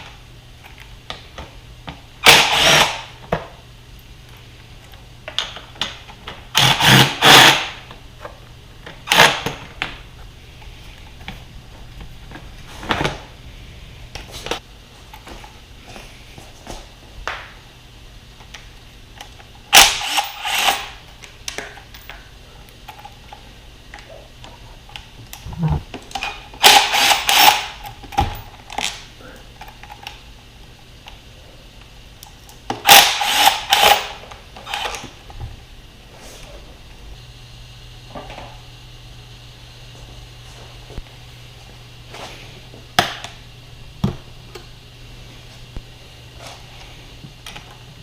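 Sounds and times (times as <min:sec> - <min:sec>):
loud rattling power tool: 0:02.2 - 0:03.1, 0:06.5 - 0:07.8, 0:19.7 - 0:21.0, 0:26.6 - 0:27.8, 0:32.8 - 0:35.0.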